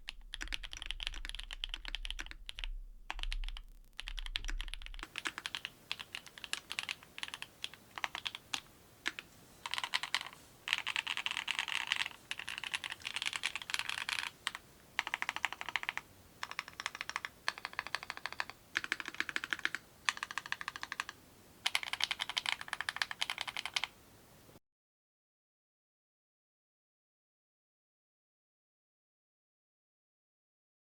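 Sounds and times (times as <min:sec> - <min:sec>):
mechanical keyboard typing: 0:00.0 - 0:24.0.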